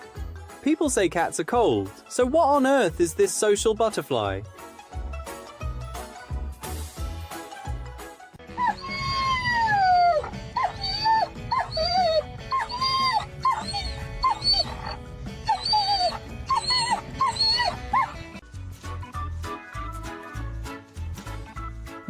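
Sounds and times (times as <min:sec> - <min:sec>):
background music: 0:00.0 - 0:22.0
pet calling: 0:08.6 - 0:18.2.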